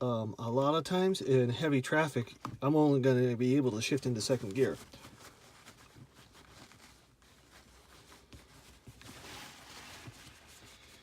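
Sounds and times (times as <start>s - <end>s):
paper towel rustling: 2.7s - 11.0s.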